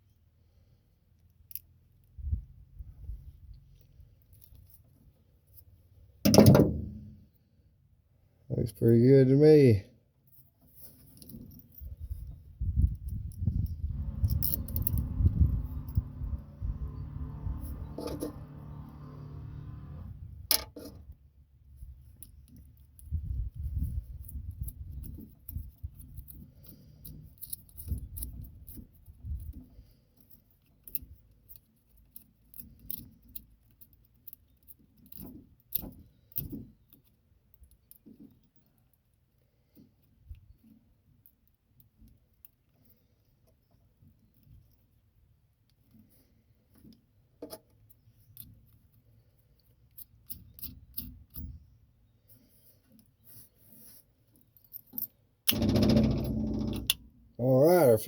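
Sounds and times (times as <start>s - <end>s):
small tools clicking and rattling: 10.7s - 18.5s, 21.8s - 44.9s, 45.7s - 51.8s, 52.4s - 57.1s
handling bumps: 55.5s - 57.2s.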